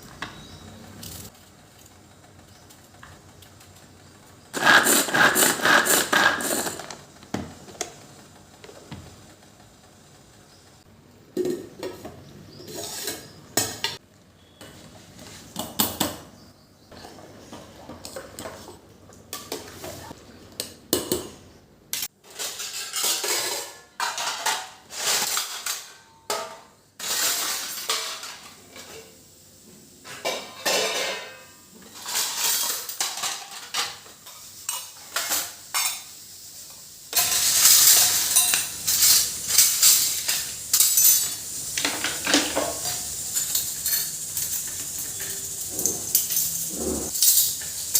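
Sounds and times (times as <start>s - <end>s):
dishes and cutlery clattering: 11.4s - 14.0s, 22.0s - 29.2s, 30.0s - 36.1s, 37.2s - 47.9s
steady hiss: 34.0s - 47.9s.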